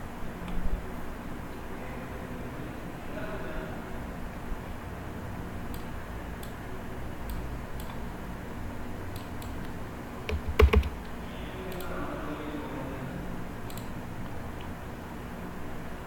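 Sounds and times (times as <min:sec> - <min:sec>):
low background noise: 0:00.0 - 0:16.0
mouse and keyboard clicks: 0:10.3 - 0:11.1.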